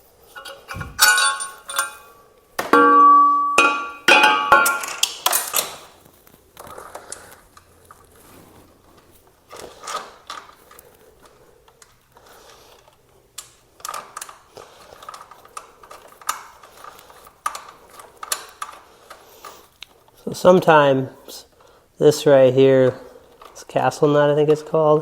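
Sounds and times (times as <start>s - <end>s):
hand tools clicking and rattling: 0.2s - 5.9s.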